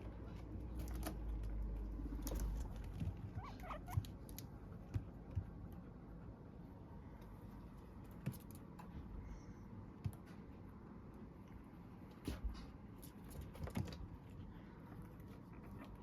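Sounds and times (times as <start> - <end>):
guinea pig clicks and snuffs: 0.1 - 6.5.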